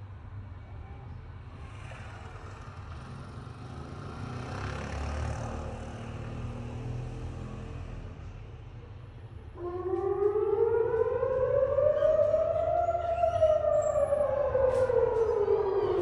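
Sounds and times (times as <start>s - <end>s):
vehicle passing by: 1.8s - 8.2s.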